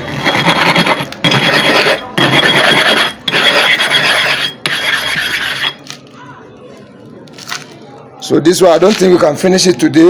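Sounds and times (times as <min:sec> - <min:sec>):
sharpening stone rasping: 0:00.0 - 0:05.9.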